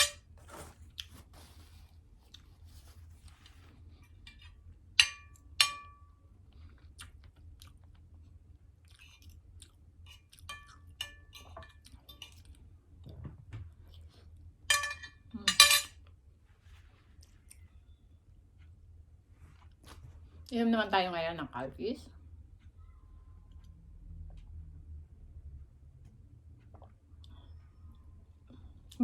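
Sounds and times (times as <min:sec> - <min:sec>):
person chewing food: 0:00.5 - 0:04.2, 0:06.4 - 0:13.0
cutlery clinking on dish: 0:04.3 - 0:06.0, 0:10.1 - 0:12.5, 0:14.7 - 0:16.0.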